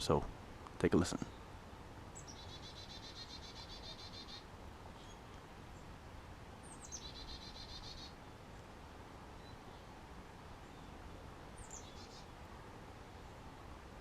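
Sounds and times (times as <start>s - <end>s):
faint outdoor hiss: 0.0s - 14.0s
songbird trilling: 2.2s - 5.3s, 6.6s - 8.3s, 11.6s - 12.3s.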